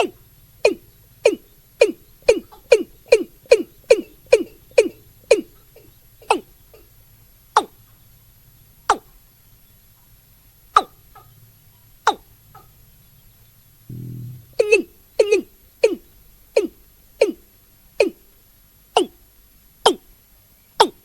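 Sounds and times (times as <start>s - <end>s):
bird calling deep notes: 13.8s - 15.5s.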